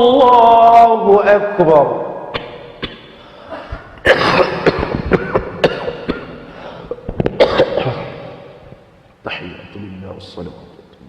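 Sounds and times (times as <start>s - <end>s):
person coughing: 4.0s - 8.5s.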